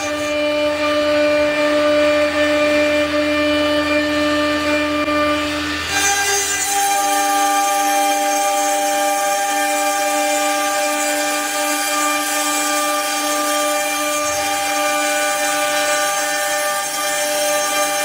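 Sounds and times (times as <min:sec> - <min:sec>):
cnc cutting machine whine: 0:00.0 - 0:18.0.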